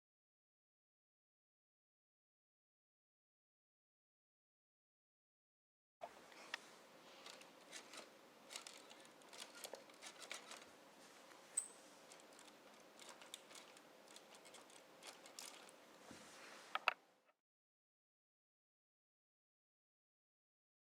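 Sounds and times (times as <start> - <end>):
small clicks and ticks: 7.2 - 10.7, 12.1 - 15.8.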